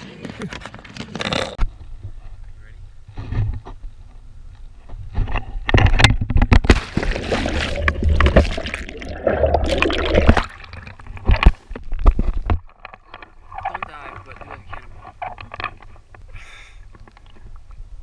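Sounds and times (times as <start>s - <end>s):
water splashing around boat: 6.6s - 16.1s.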